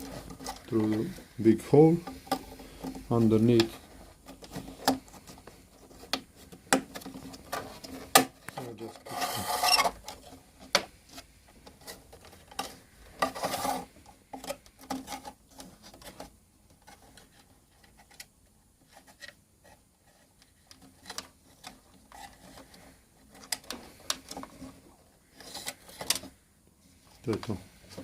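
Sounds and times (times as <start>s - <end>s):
cables scraping through a hole: 9.0s - 10.0s.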